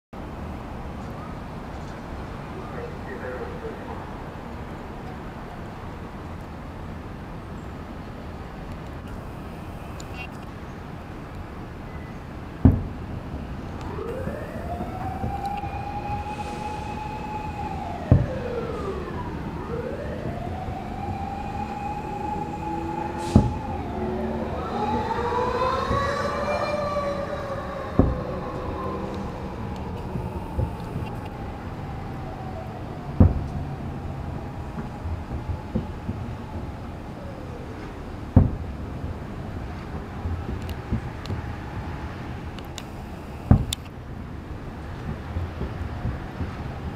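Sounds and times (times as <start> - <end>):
distant fireworks booming: 12.4 - 42.2, 44.8 - 46.9
wailing siren: 13.4 - 43.8.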